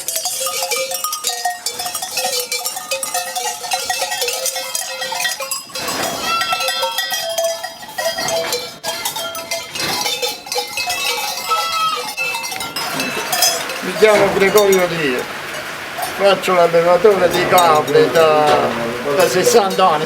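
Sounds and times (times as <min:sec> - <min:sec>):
goat bells clanking: 0:00.0 - 0:20.0
goats bleating: 0:05.8 - 0:07.2, 0:11.3 - 0:20.0.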